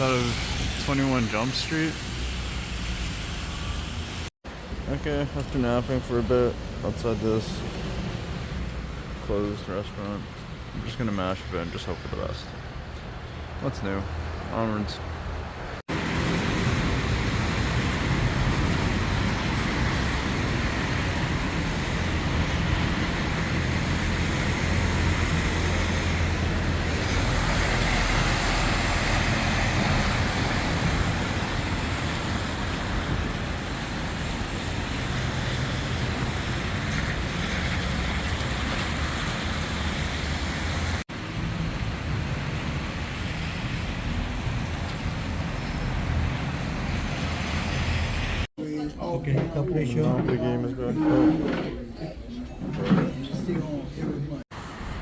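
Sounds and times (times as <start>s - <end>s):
road traffic noise: 0.0s - 48.5s, 49.7s - 55.0s.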